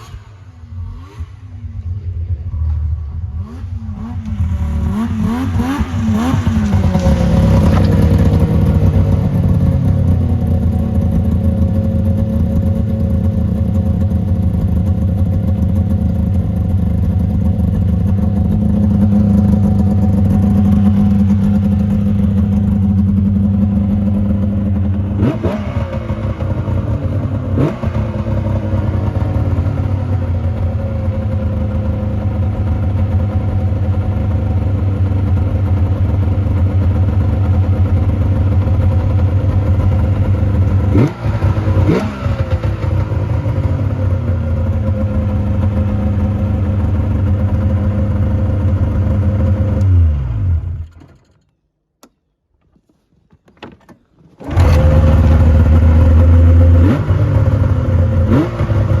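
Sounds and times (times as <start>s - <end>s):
snowmobile engine revving: 0.0s - 13.6s, 15.5s - 34.5s, 36.8s - 50.8s, 54.4s - 59.0s.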